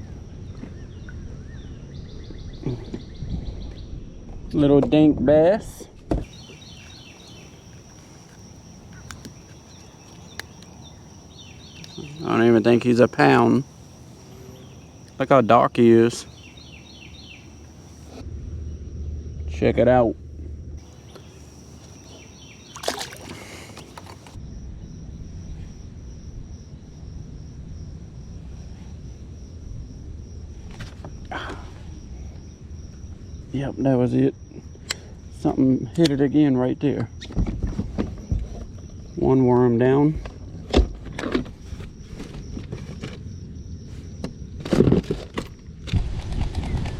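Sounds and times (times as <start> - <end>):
wind buffeting microphone: 0.0 - 5.4, 45.1 - 46.9
bird chirping: 6.2 - 18.2, 20.8 - 24.4
outdoor hiss: 6.2 - 18.2, 20.8 - 24.4
high insect drone: 6.2 - 46.9
knocks and rustling: 37.2 - 38.9, 44.2 - 46.9.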